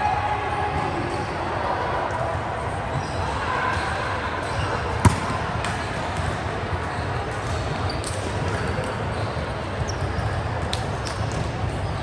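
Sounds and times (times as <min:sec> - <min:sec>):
volleyball struck hard: 0:05.0 - 0:06.6.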